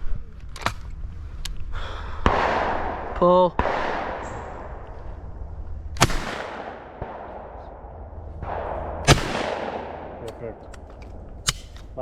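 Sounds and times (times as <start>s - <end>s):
shotgun shots with echo: 2.2s - 4.8s, 6.0s - 10.6s.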